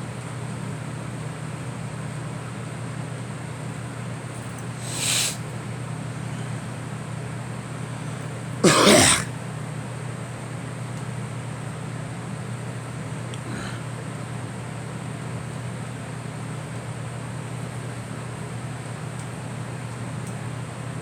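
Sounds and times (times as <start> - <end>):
girl coughing: 8.6 - 9.3, 13.5 - 13.8.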